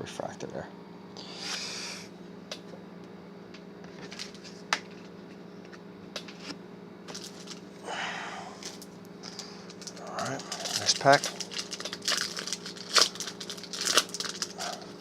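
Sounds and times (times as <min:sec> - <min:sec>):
steady low hum: 0:00.0 - 0:15.0
papery rustle of card pack: 0:07.1 - 0:07.6, 0:08.6 - 0:15.0.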